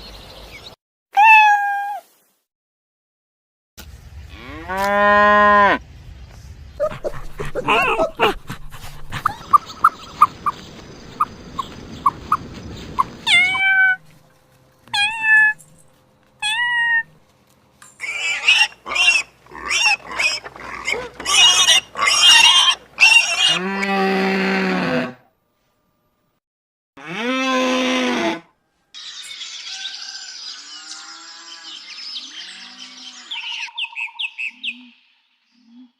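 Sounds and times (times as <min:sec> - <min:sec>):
low drawn-out animal call: 0:06.8 - 0:10.6, 0:18.0 - 0:25.3
rough raspy animal calls: 0:06.8 - 0:10.6, 0:18.0 - 0:25.2.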